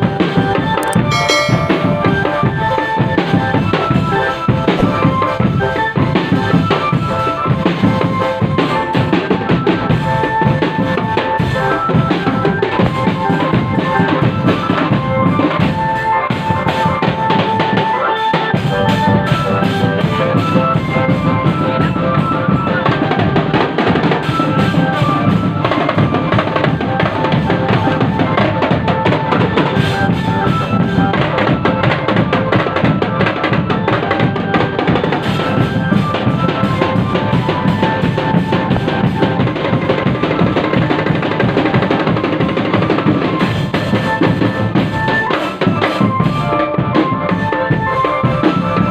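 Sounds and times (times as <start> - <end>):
street drum band playing: 0.0 - 48.9
held melody line: 0.8 - 4.4.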